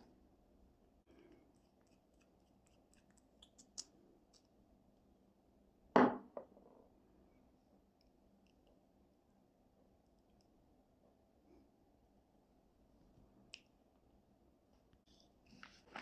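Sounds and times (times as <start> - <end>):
knock on hard surface: 6.0 - 6.4.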